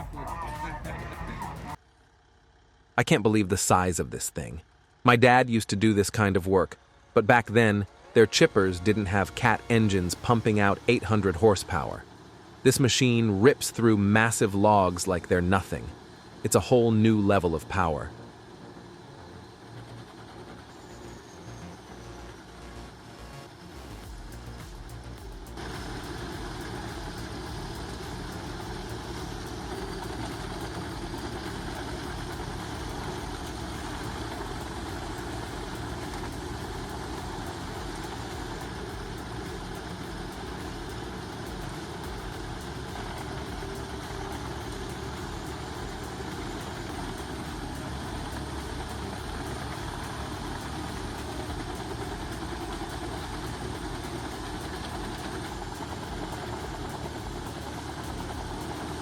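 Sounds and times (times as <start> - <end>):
heavy machine engine rumbling: 0.0 - 5.1, 6.8 - 59.0.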